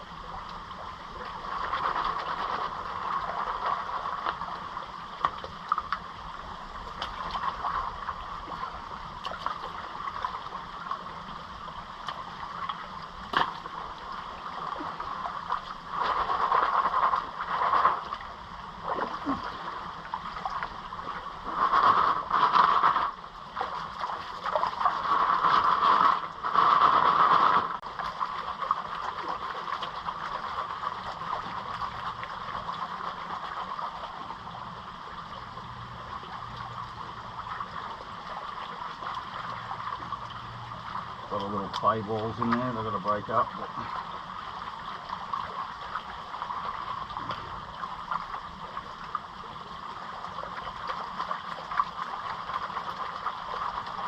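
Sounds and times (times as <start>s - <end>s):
water sloshing in gold pan: 1.1s - 6.0s, 12.0s - 34.3s.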